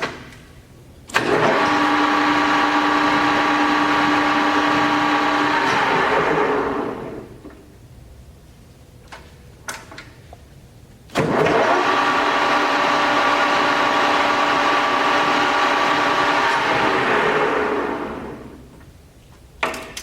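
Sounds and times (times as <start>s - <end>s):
lathe humming whine: 1.5s - 7.5s.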